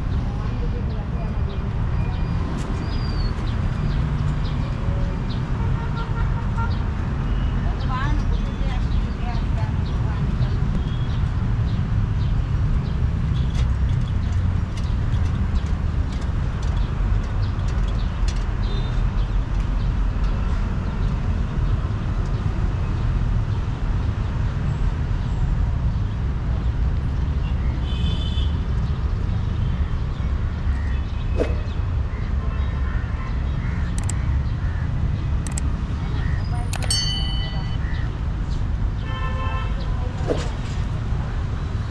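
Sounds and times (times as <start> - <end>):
small clicks: 33.9 - 34.2, 35.4 - 35.7.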